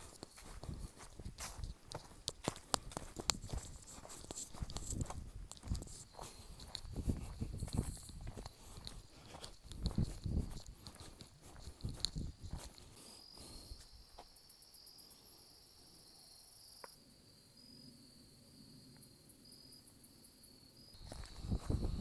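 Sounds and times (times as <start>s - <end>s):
footsteps on trail: 0.0s - 14.3s, 21.0s - 22.0s
insects trilling: 0.0s - 22.0s.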